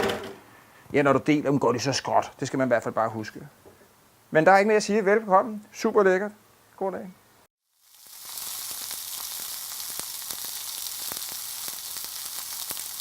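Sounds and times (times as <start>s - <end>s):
meat sizzling on hot grill: 7.6s - 13.0s.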